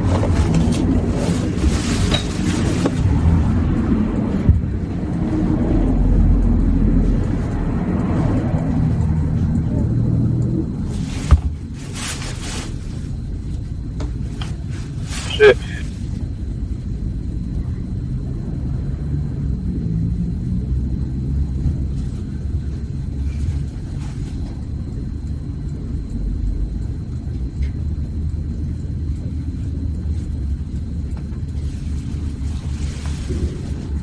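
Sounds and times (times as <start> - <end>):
low rumble: 0.0 - 14.0.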